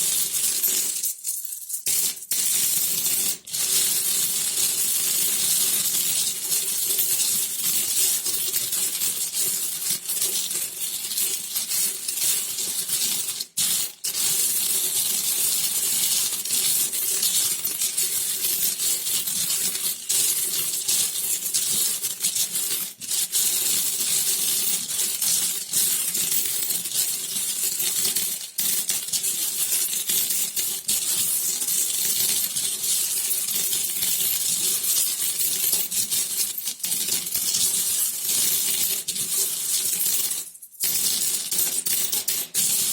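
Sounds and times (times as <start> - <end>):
metal coins jingling: 0.7 - 2.3.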